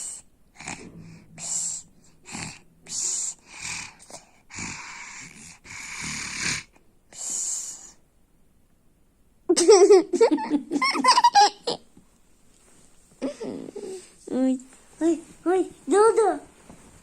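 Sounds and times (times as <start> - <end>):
person snoring: 0.6 - 6.7.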